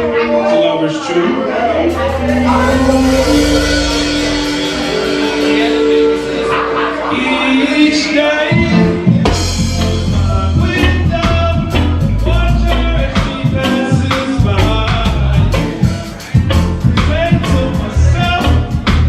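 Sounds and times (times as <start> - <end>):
reggae band playing live: 0.0 - 19.0
heavy bass line: 1.6 - 8.2, 9.3 - 13.6.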